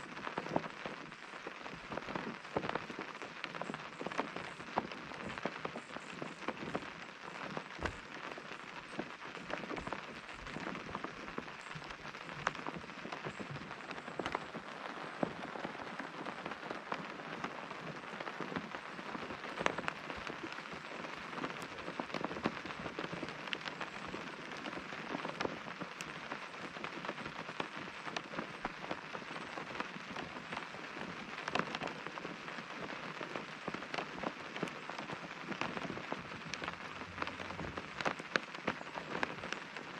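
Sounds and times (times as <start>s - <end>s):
rain pattering on tent fabric: 0.0s - 39.9s.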